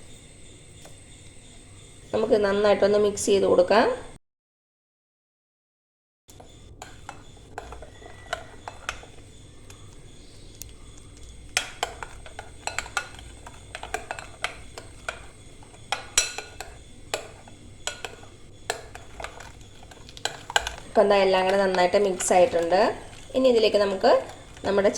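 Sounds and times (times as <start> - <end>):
spoon clinking and scraping bowl: 6.3 - 24.9.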